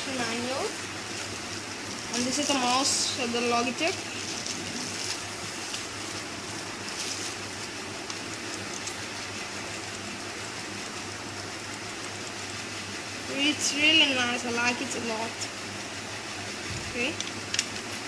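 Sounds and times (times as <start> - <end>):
room background hiss: 0.0 - 18.0
faint handling sounds: 3.9 - 8.9.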